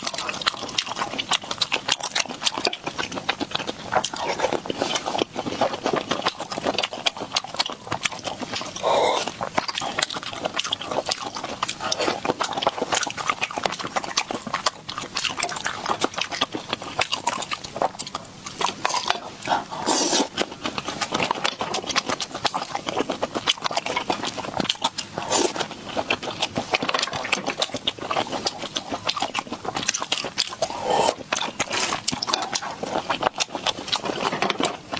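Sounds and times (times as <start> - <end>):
snails wet chewing and slurping: 0.0 - 34.9.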